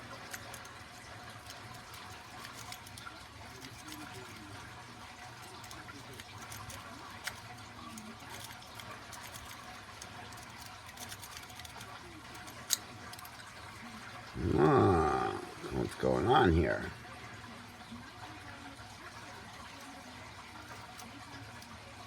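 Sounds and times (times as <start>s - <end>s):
faint steady hum: 14.3s - 17.2s.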